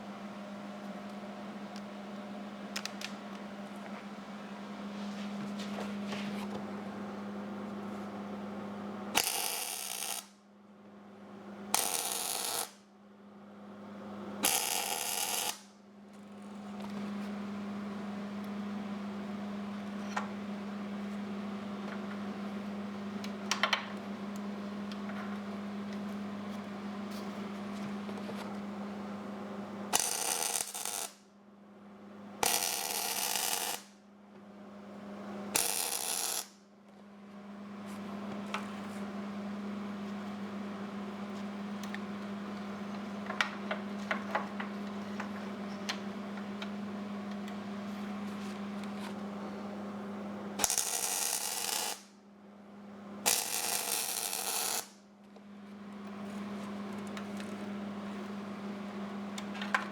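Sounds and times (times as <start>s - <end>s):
steady electrical hum: 0.0s - 59.9s
arc welding bursts: 9.2s - 10.3s, 11.8s - 12.8s, 14.4s - 15.7s, 29.9s - 31.2s, 32.4s - 33.9s, 35.6s - 36.6s, 50.6s - 52.1s, 53.3s - 55.0s.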